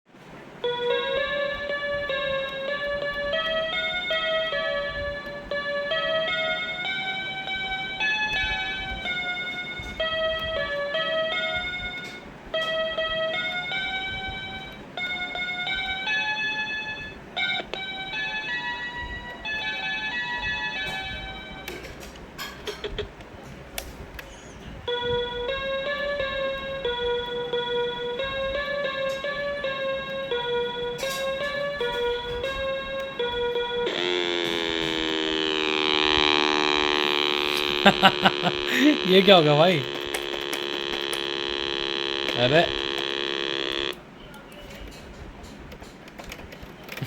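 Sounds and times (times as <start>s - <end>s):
simple melody in single notes: 0.6s - 23.3s, 24.3s - 44.0s
sharp clicks: 31.0s - 44.6s.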